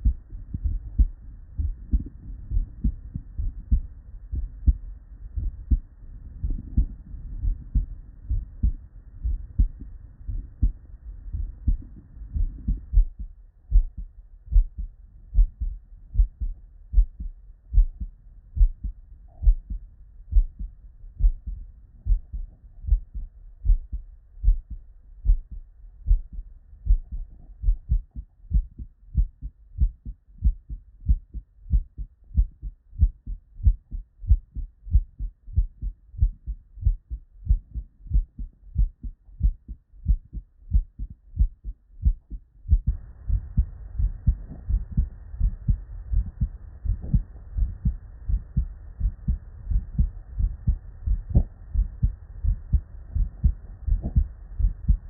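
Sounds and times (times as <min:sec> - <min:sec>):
heartbeat lub-dub thumps: 0:00.0 - 0:55.0.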